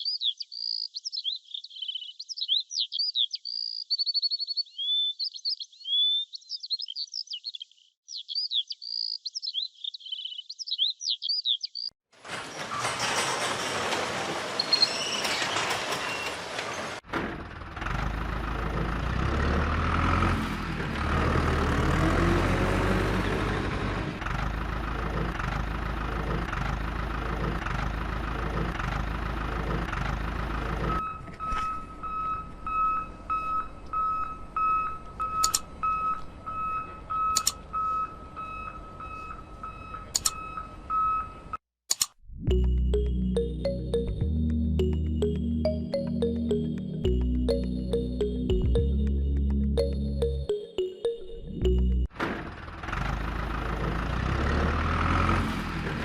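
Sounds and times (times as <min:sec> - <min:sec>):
large vehicle engine running: 0:12.3 - 0:14.7, 0:15.6 - 0:37.7, 0:42.5 - 0:50.4, 0:51.6 - 0:56.0
sharp clicks: 0:35.4 - 0:36.3, 0:37.3 - 0:37.6, 0:40.1 - 0:40.4, 0:41.9 - 0:42.2.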